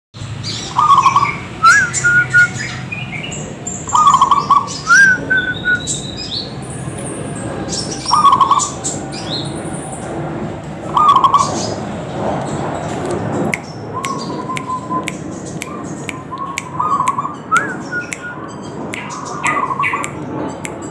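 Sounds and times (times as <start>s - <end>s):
small birds chirping: 0.4s - 10.1s, 10.9s - 20.9s
dove cooing: 3.9s - 5.9s, 7.6s - 9.8s, 10.9s - 11.8s.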